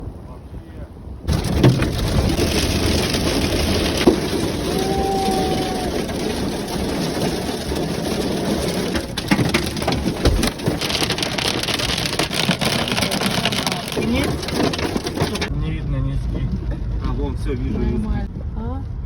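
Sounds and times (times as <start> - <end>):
heavy hail clattering: 1.3 - 15.6.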